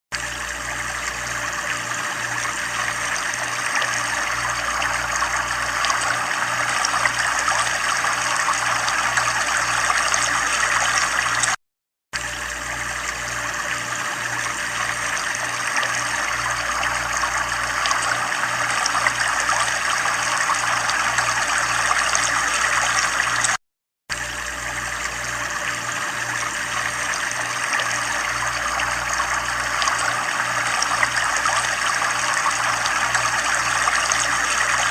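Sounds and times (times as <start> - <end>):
water running: 0.1 - 11.6, 12.2 - 23.6, 24.7 - 34.9.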